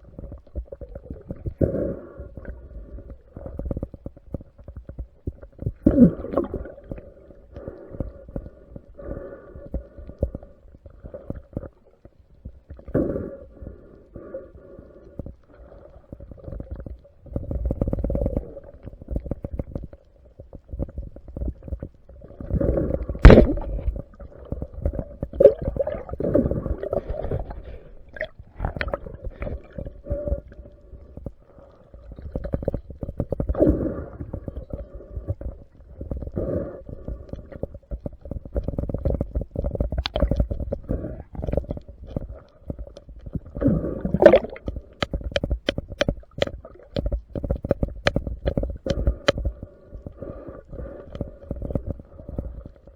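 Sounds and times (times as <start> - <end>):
underwater gurgling and rumbling: 0.0 - 52.9.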